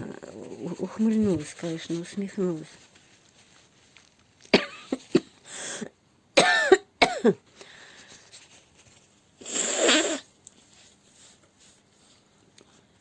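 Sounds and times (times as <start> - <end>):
woman coughing: 4.5 - 5.4, 6.4 - 7.4.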